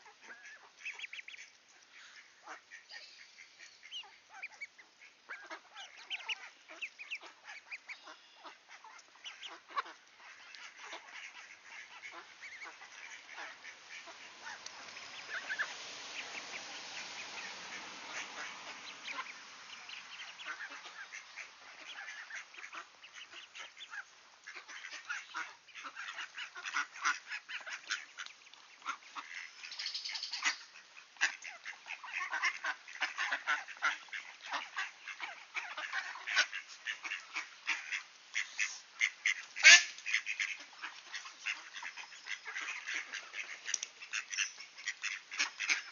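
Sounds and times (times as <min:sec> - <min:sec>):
ducklings peeping: 0:00.0 - 0:45.9
ducks quacking: 0:00.0 - 0:45.9
soft rushing noise: 0:10.2 - 0:23.4.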